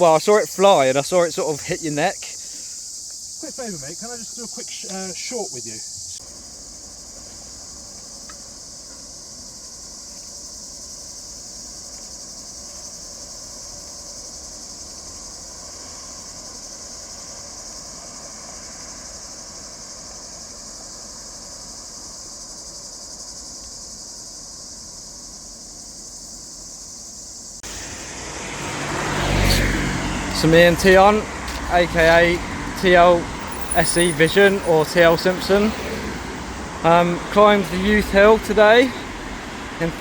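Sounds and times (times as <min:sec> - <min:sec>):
cicadas singing: 0:00.0 - 0:40.0
loud rushing noise: 0:27.6 - 0:40.0.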